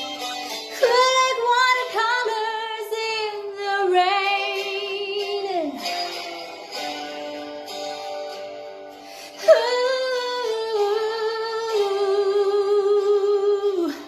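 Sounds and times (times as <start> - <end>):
woman singing with vibrato: 0.6 - 6.7, 9.3 - 14.0.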